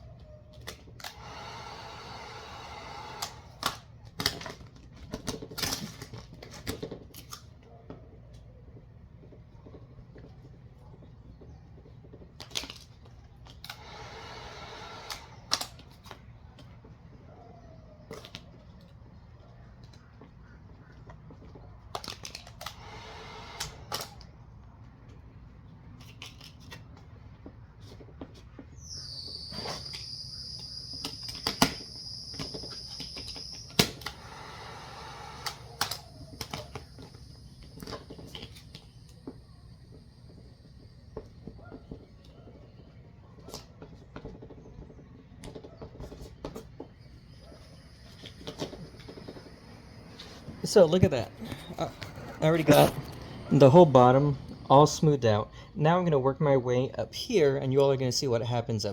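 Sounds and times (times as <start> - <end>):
high-pitched whistle: 28.8 - 34.4.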